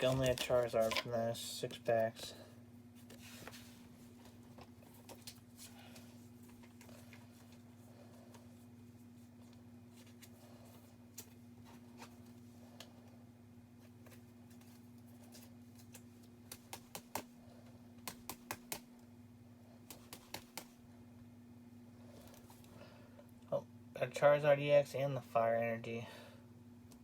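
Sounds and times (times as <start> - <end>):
steady low hum: 0.0 - 27.0
cards clicking and tapping: 15.8 - 17.3, 18.0 - 18.9, 19.9 - 20.8.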